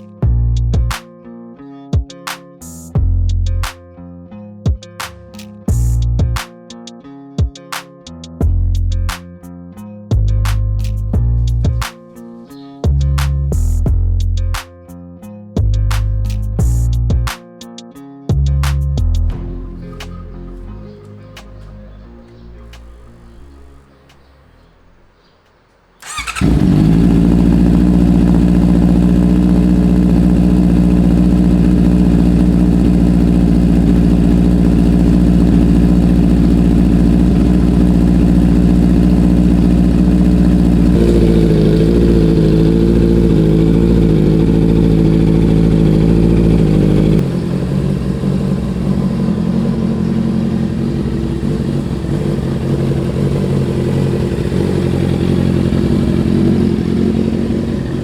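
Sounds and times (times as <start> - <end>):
motorcycle engine idling: 19.3 - 25.3, 26.0 - 58.0.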